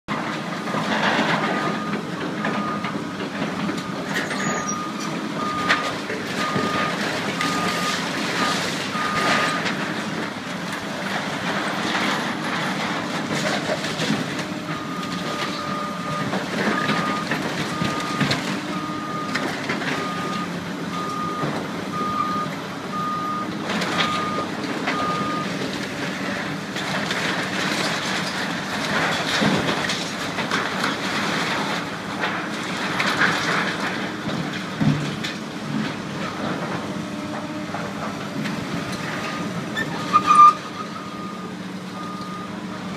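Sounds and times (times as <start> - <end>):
demolition machine engine hum: 0.1 - 42.9
debris clattering and scraping: 3.2 - 20.1, 23.7 - 40.7.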